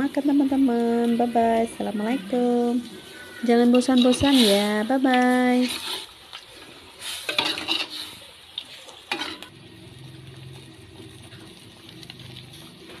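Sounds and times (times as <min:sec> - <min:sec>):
metal utensils clinking on dishes: 0:03.8 - 0:04.4, 0:07.3 - 0:08.0, 0:09.1 - 0:09.5.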